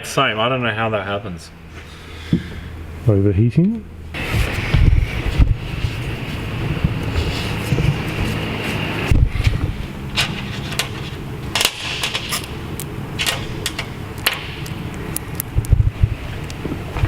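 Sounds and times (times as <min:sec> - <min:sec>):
low rumble: 0:03.8 - 0:11.5.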